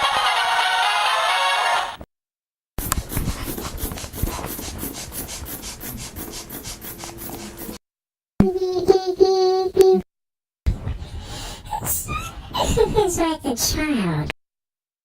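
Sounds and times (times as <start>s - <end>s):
rhythmic rasping strokes: 2.8s - 7.8s.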